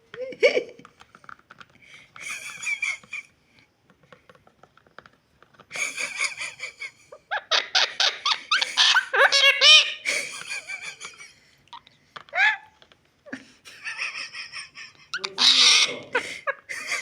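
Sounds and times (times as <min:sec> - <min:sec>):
parrot calling: 0:07.3 - 0:10.1, 0:11.7 - 0:12.8, 0:15.1 - 0:16.5.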